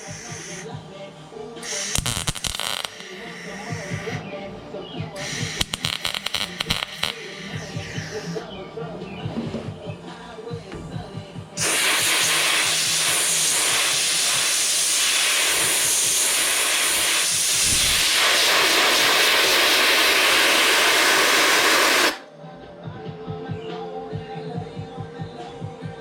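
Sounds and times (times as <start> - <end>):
welder hissing: 0.0 - 0.8, 1.6 - 4.3, 5.2 - 8.5, 11.1 - 22.2.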